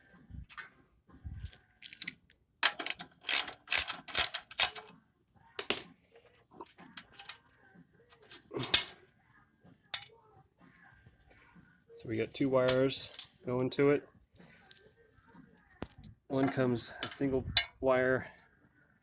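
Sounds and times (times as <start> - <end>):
metallic clicks of hand tools: 1.4 - 4.9, 7.0 - 7.4.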